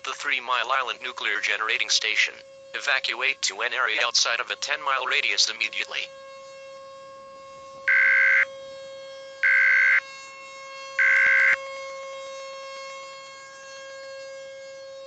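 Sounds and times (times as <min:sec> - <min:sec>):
steady electronic tone: 0:07.8 - 0:08.4, 0:11.0 - 0:11.6
raspy digital data tones: 0:07.9 - 0:08.4, 0:11.0 - 0:11.6.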